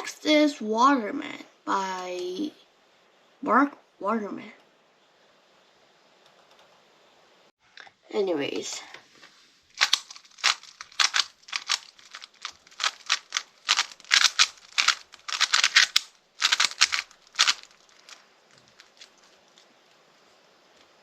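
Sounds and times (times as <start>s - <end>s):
puzzle cube clicking: 9.8s - 18.2s.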